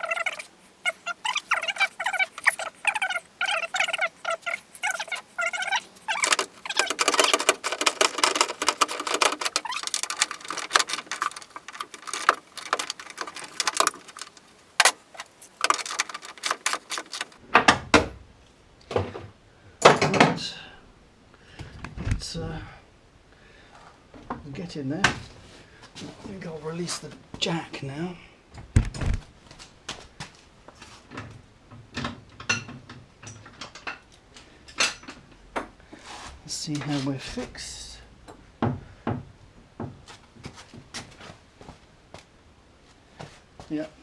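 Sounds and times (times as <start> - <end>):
scraping rattle: 0.0 - 17.4
sharp metal clicks and knocks: 0.0 - 17.4
spanner metallic chirps: 0.0 - 17.4.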